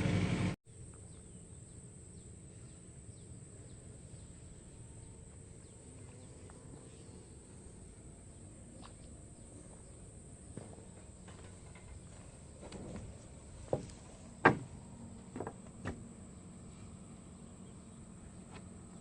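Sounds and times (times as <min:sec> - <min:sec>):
excavator humming: 0:00.0 - 0:00.6.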